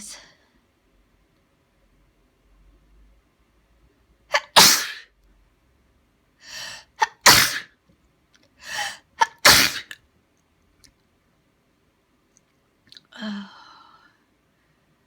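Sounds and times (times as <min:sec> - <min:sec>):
person sneezing loudly: 0:04.3 - 0:05.1, 0:07.0 - 0:07.7, 0:08.7 - 0:10.0.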